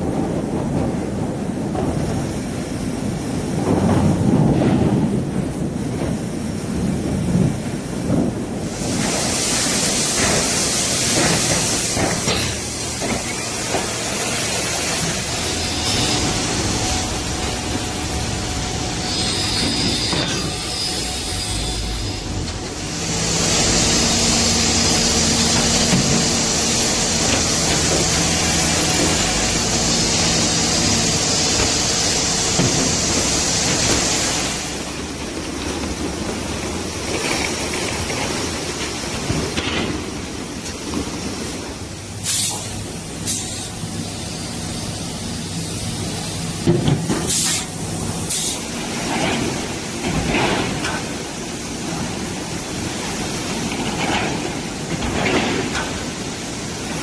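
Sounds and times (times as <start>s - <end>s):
loud air hiss: 8.5s - 35.2s, 40.0s - 50.0s
machinery drone and hum: 11.1s - 40.0s
short sharp hisses: 42.2s - 43.7s, 47.3s - 48.7s.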